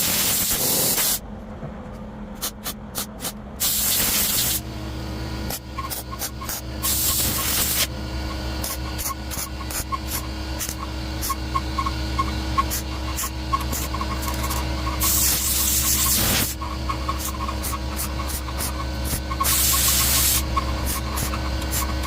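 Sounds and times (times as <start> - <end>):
welding arc crackle: 0.0 - 1.2, 3.0 - 4.7, 5.5 - 22.0
welding bead hissing: 0.0 - 1.2, 3.0 - 4.7, 5.5 - 22.0
welder machine hum: 0.0 - 1.3, 2.3 - 22.0.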